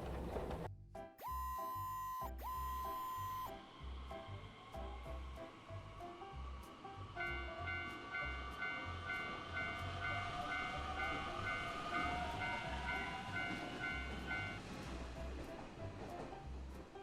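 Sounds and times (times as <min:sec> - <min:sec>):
train rumbling and clattering: 0:00.0 - 0:00.8, 0:03.6 - 0:17.0
railroad crossing bell clanging: 0:07.2 - 0:14.7.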